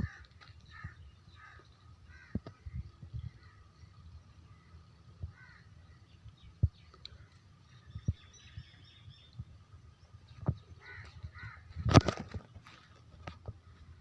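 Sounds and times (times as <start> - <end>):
birds chirping and cawing: 0.0 - 14.0.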